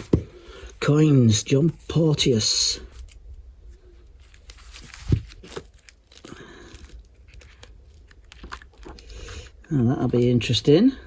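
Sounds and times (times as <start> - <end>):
paper rustling and crinkling: 1.7 - 9.2.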